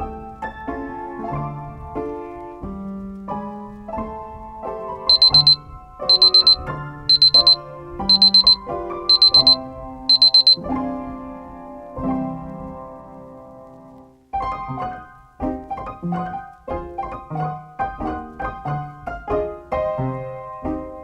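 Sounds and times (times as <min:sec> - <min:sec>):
digital alarm clock beeping: 0:05.1 - 0:10.6.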